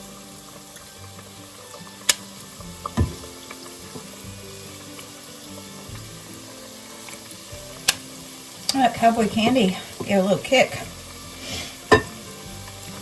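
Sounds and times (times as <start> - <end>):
batter sizzling in hot oil: 0.0 - 13.0.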